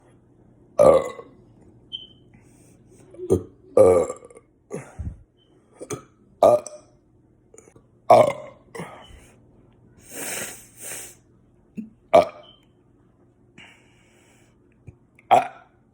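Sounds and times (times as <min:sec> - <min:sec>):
faint low hum: 0:00.0 - 0:15.9
person burping: 0:00.8 - 0:01.4, 0:03.1 - 0:05.2, 0:05.8 - 0:06.9, 0:07.6 - 0:09.1, 0:12.1 - 0:12.5, 0:15.2 - 0:15.8.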